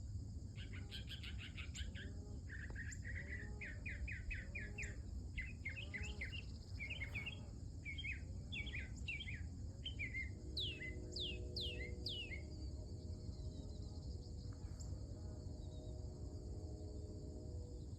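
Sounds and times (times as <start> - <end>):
high insect drone: 0.0 - 17.9
mockingbird singing: 0.6 - 12.5.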